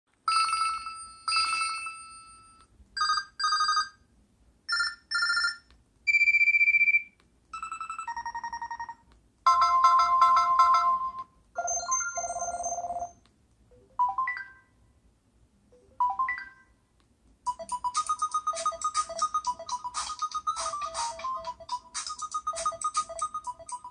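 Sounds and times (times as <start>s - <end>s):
cell phone ringtones beeps and chimes: 4.7s - 14.8s, 15.8s - 16.8s, 17.5s - 23.9s.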